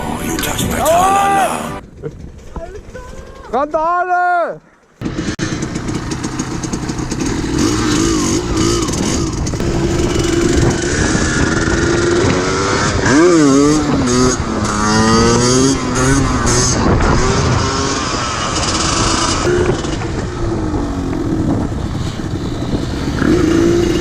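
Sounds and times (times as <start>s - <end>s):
motorcycle engine revving: 5.0s - 24.0s.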